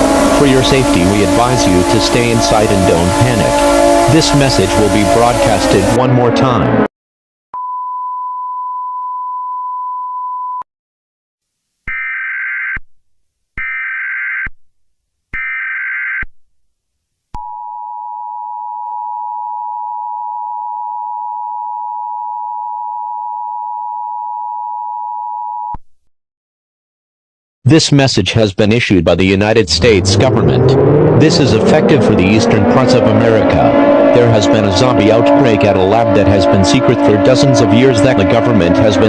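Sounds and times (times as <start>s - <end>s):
buzzy data bursts: 0.0s - 6.0s.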